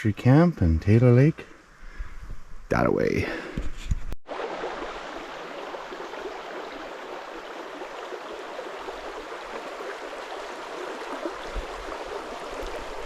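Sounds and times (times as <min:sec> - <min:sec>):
stream of water flowing: 0:04.2 - 0:13.0.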